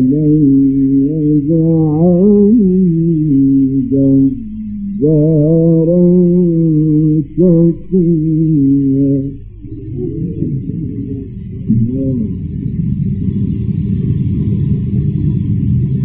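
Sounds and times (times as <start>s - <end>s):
man chanting: 0.0s - 12.6s
low steady hum: 0.0s - 16.0s.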